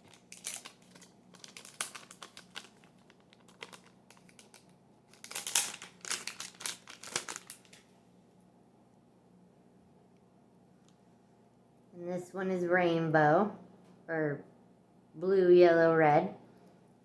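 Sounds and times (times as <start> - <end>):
plastic packaging crinkling: 0.0 - 7.9.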